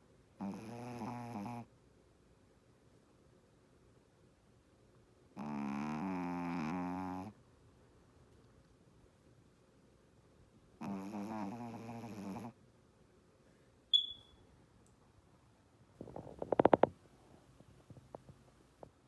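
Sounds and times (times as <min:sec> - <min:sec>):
dog snoring: 0:00.4 - 0:01.7, 0:05.4 - 0:07.4, 0:10.8 - 0:12.6
short high-pitched blip: 0:14.0 - 0:14.4.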